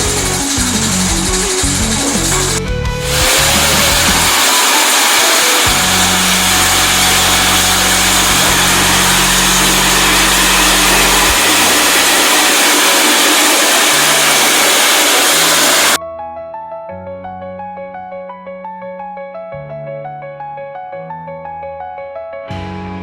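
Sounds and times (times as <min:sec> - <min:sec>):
compost grinder running: 0:00.0 - 0:16.0.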